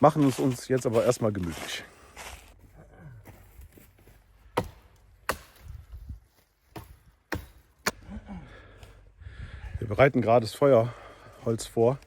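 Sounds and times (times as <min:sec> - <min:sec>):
firewood being chopped: 0:04.4 - 0:06.0, 0:06.6 - 0:08.0.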